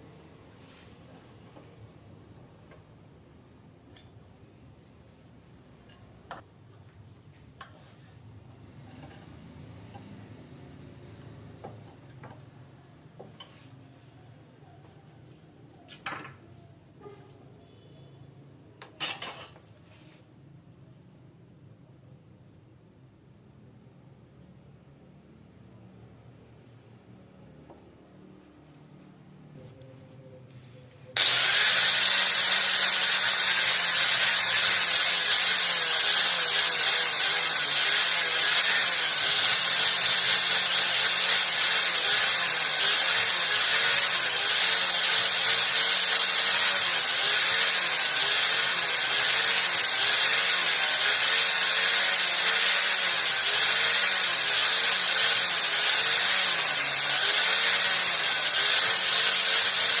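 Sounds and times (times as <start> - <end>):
electric power tool running: 31.2 - 60.0.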